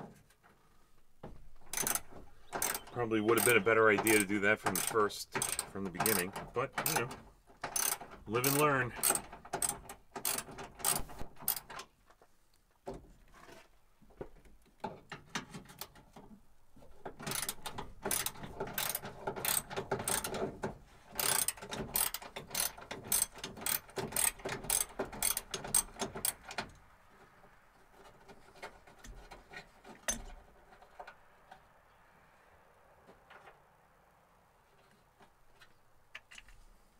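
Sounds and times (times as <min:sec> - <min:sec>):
ratchet wrench clicking: 0:01.7 - 0:02.0, 0:07.8 - 0:11.6, 0:21.2 - 0:26.4.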